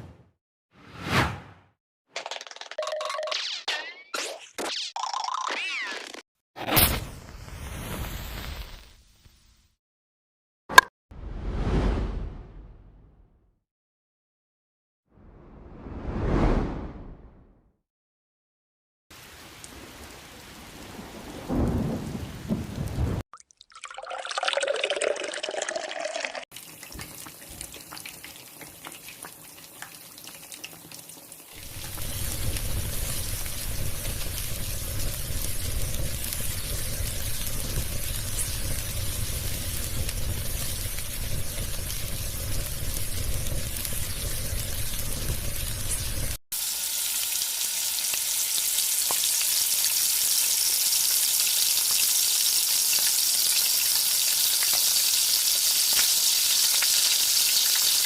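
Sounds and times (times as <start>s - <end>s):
food sizzling in hot oil: 26.5s - 58.0s.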